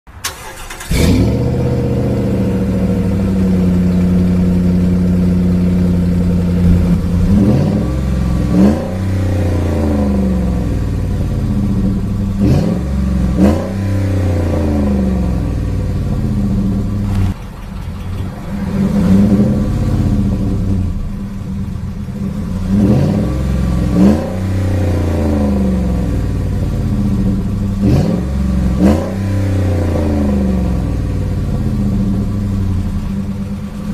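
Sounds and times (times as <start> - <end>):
truck engine starting and idling: 0.1 - 33.9
engine revving: 0.2 - 33.9.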